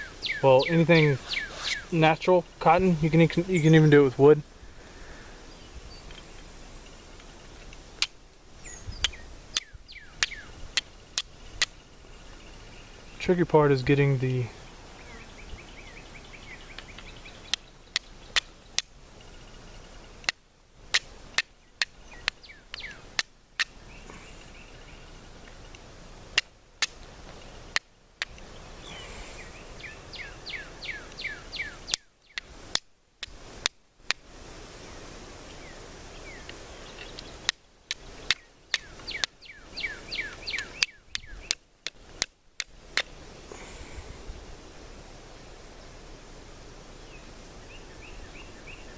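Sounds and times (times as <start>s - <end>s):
bird calling falling notes: 0.0s - 4.4s, 38.2s - 41.6s.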